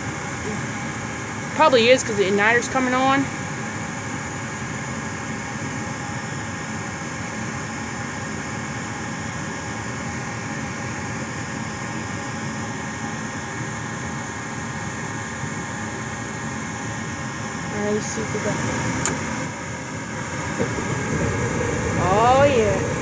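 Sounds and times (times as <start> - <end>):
furnace inducer motor humming: 0.0 - 4.7, 13.5 - 23.0.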